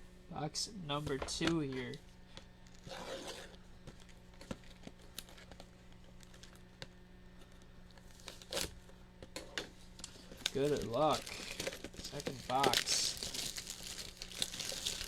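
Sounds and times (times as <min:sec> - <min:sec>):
faint steady hum: 0:00.0 - 0:15.0
plastic wrap tearing and crinkling: 0:02.6 - 0:06.8, 0:07.5 - 0:08.8, 0:10.0 - 0:15.0.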